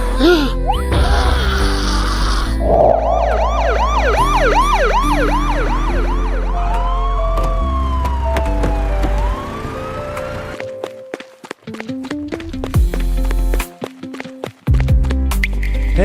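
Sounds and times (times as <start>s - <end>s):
background music: 0.0s - 16.0s
siren yelping and wailing: 2.5s - 10.6s.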